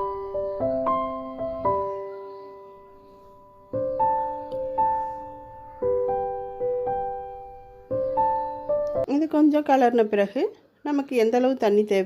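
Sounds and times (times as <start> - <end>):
soft piano chords: 0.0 - 9.3.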